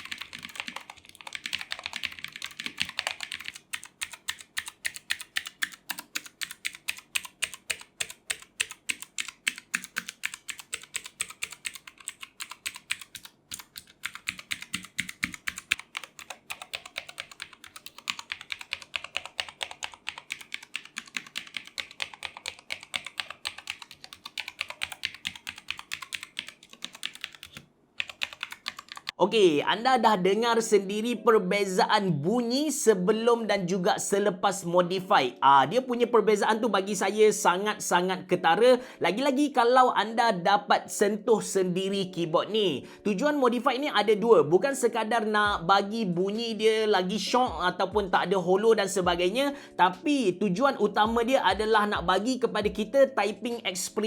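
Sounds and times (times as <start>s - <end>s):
mechanical keyboard typing: 0.0s - 29.2s.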